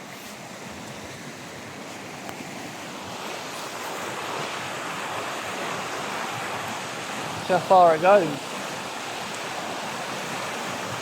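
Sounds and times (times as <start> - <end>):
rushing river water: 0.0 - 11.0.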